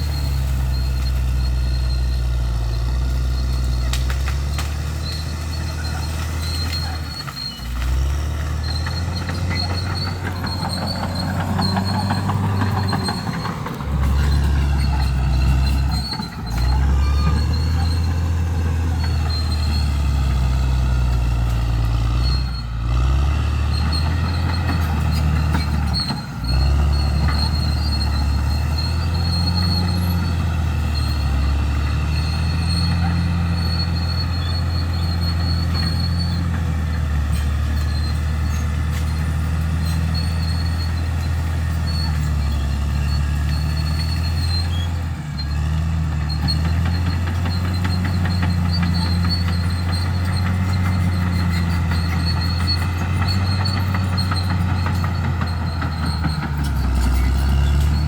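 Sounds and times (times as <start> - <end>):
bulldozer diesel engine: 0.0 - 58.0
metallic squealing: 0.0 - 58.0.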